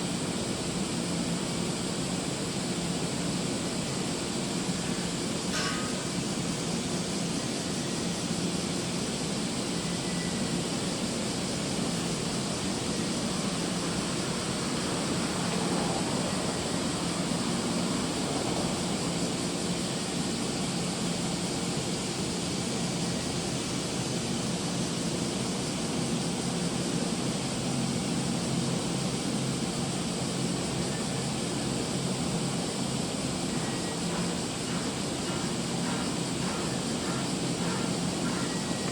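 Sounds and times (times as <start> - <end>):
hiss of wind and water: 0.0 - 38.9
ship engine hum: 11.0 - 22.0, 31.5 - 38.9.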